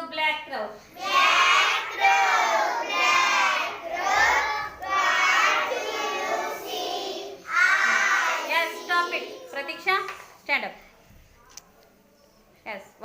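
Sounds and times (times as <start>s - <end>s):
children chanting in unison: 0.8s - 9.6s.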